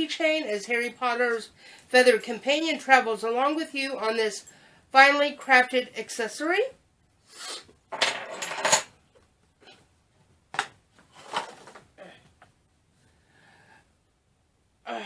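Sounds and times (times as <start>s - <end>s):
packaging rustling: 11.0s - 11.8s.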